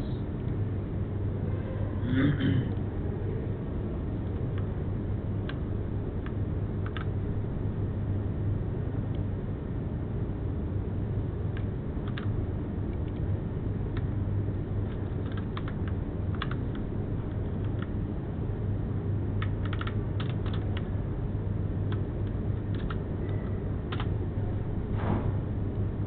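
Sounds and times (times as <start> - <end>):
steady low hum: 0.0 - 26.0
computer keyboard typing: 6.2 - 7.2, 12.0 - 12.3, 14.8 - 18.0, 19.4 - 20.9, 21.9 - 24.2.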